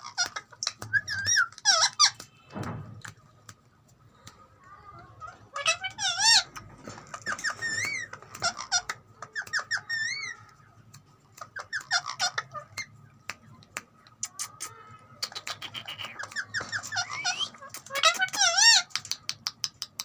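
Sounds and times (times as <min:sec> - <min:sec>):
parrot chirping and whistling: 0:00.9 - 0:02.2, 0:15.4 - 0:18.7.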